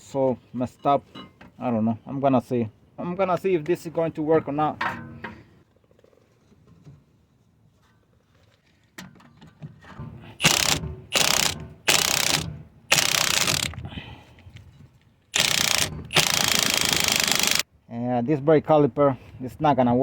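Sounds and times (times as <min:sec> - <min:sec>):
ratchet wrench clicking: 0:10.4 - 0:13.8, 0:15.4 - 0:17.6.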